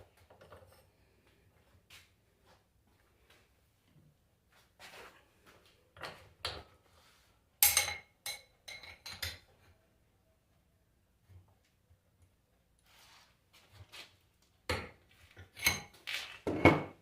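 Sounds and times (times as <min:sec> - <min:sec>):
metal tools knocking on workbench: 0:15.7 - 0:17.0.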